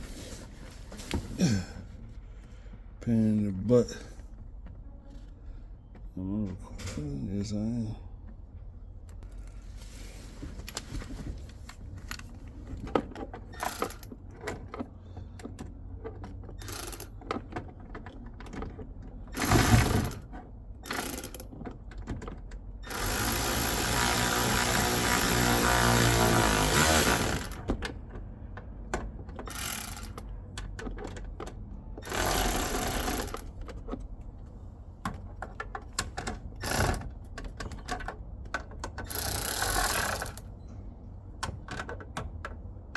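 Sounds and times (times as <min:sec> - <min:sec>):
loud steady mechanical noise: 0:22.8 - 0:27.8.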